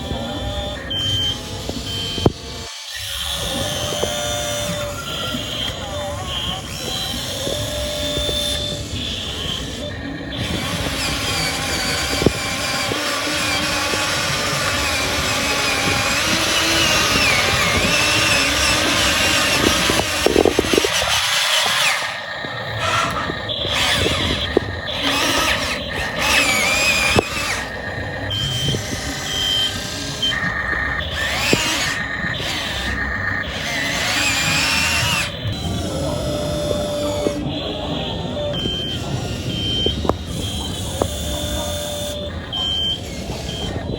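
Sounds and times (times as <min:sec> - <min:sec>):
short beeps: 0:00.0 - 0:02.4, 0:26.6 - 0:33.5, 0:35.1 - 0:43.9
model excavator motors whining: 0:00.0 - 0:43.9.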